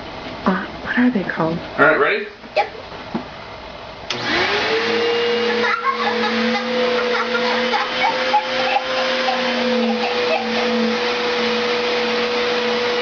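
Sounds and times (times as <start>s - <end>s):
vacuum cleaner running: 4.1s - 13.0s.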